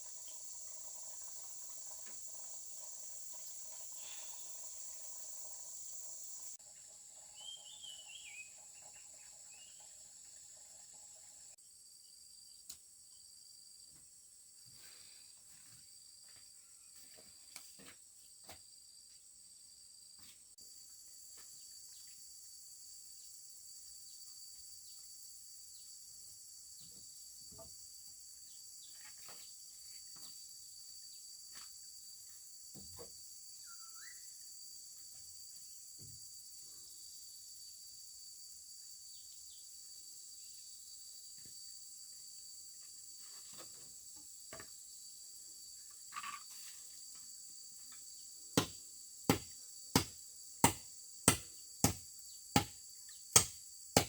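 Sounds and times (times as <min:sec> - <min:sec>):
insects chorus: 0:00.0 - 0:54.0.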